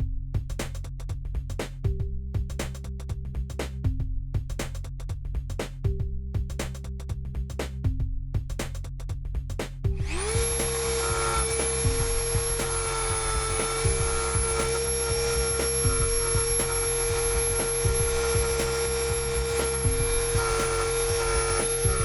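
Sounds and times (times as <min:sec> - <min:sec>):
electronic music with a beat: 0:00.0 - 0:22.0
rotary tool sanding: 0:10.2 - 0:22.0.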